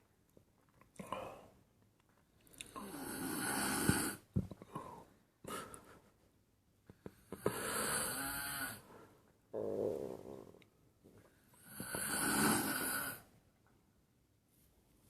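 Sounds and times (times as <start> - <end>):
quiet breathing: 1.0 - 13.3
person snoring: 2.7 - 4.3, 7.2 - 10.6, 11.6 - 13.3.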